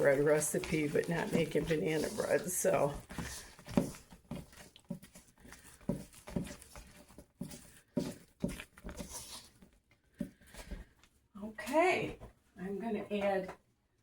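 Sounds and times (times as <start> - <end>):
spoon stirring thick batter: 0.0 - 11.2.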